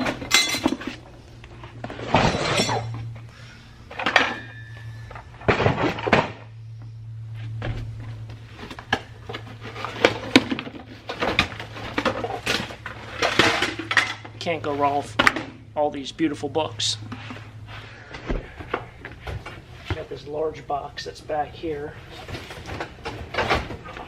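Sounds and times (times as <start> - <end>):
metal utensils clattering: 0.0 - 0.9, 11.2 - 14.3
steady low hum: 0.0 - 24.0.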